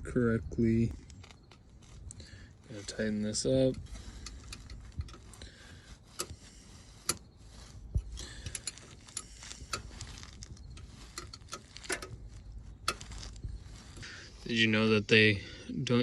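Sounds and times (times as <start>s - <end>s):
hand ratchet clicking: 3.7s - 5.5s, 6.1s - 7.3s, 8.0s - 12.2s.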